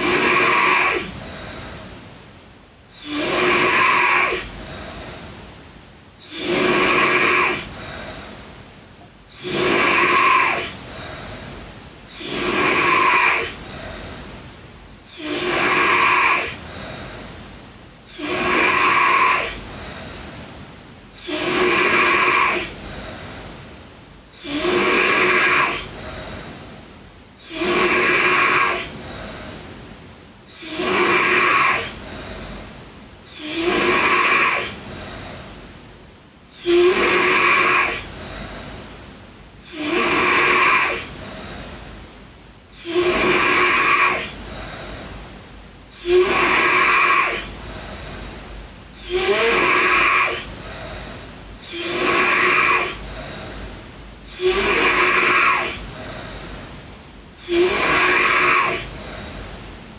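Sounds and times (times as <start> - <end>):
girl snoring: 0.0 - 1.9, 3.0 - 5.2, 6.2 - 8.3, 9.3 - 14.3, 15.1 - 17.2, 18.1 - 20.4, 21.1 - 23.4, 24.3 - 26.6, 27.4 - 29.6, 30.5 - 32.6, 33.3 - 35.4, 36.5 - 38.7, 39.6 - 41.7, 42.7 - 45.3, 45.9 - 56.6, 57.4 - 59.4.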